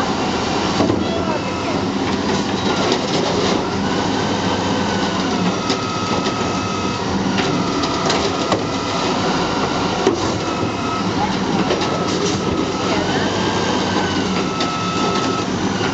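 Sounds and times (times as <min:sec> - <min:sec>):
garbage truck engine rumbling: 0:00.0 - 0:15.9.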